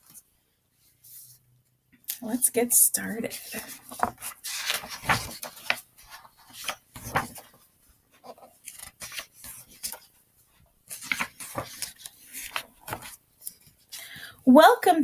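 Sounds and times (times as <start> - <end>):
pages rustling: 3.3 - 14.0.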